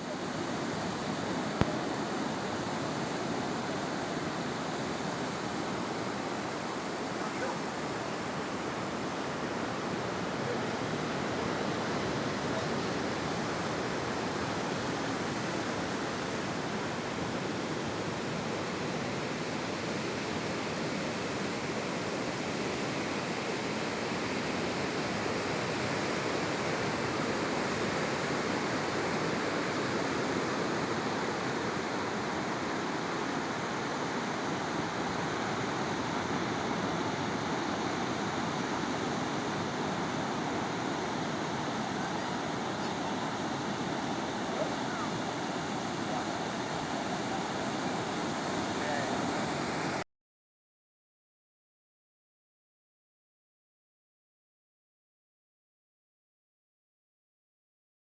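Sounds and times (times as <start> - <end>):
ocean waves breaking: 25.4 - 50.0.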